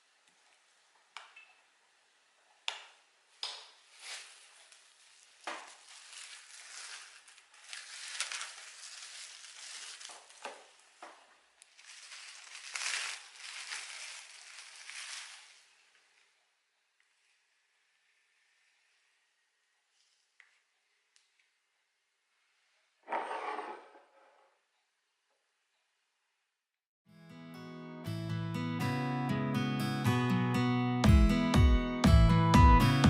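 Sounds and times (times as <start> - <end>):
utensil scraping a dish: 23.0 - 24.4.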